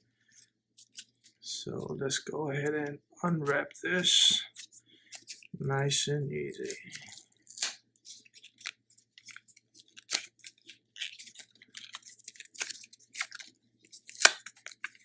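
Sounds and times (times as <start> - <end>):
packaging crinkling: 4.5 - 5.6, 6.5 - 15.0.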